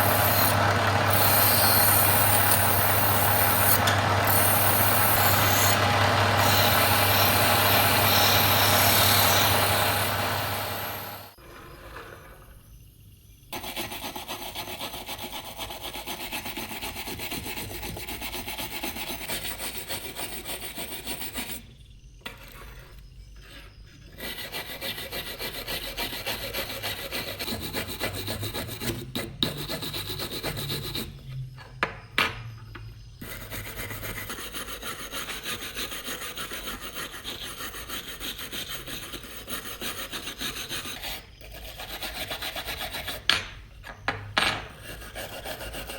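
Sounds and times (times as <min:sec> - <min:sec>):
hand sanding scraping strokes: 0:00.0 - 0:11.4.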